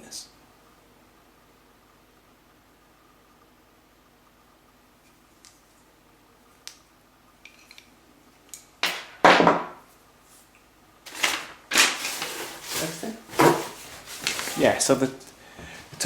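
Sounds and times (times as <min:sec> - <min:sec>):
objects rustling and scraping: 0:09.8 - 0:16.0.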